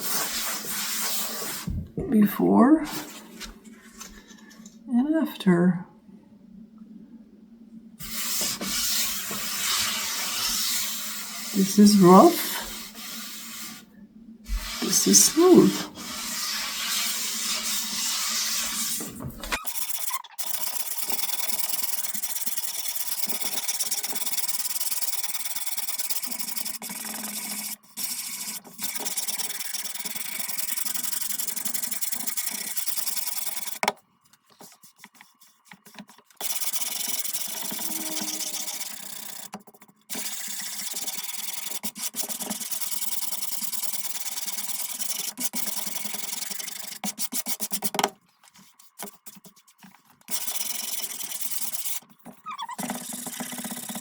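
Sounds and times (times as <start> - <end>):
sandpaper scrubbing wood: 0.0 - 1.7, 8.0 - 13.9, 14.5 - 33.8, 36.4 - 39.5, 40.1 - 48.0, 48.6 - 52.8.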